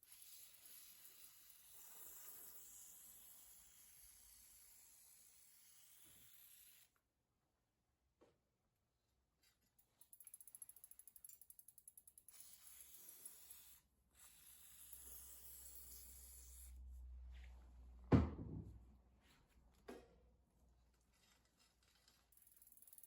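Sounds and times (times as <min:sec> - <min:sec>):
bicycle hub ratcheting clicks: 0:10.0 - 0:15.2, 0:22.3 - 0:23.0
thump: 0:18.1 - 0:18.9.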